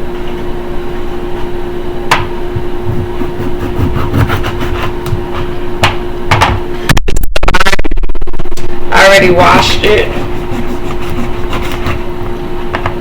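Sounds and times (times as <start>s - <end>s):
appliance hum: 0.0s - 13.0s
knife cutting on cutting board: 2.9s - 5.6s, 10.0s - 12.1s.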